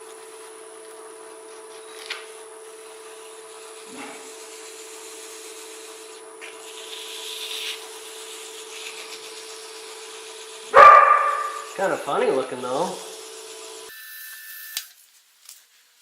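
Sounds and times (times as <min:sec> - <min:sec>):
motor hum: 0:00.0 - 0:14.9
wood rubbing on a lathe: 0:02.4 - 0:13.9.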